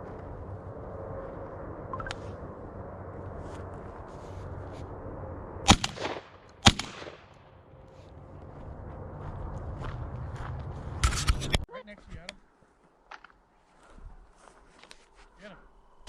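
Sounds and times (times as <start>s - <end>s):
shotgun shots with echo: 5.7s - 7.3s.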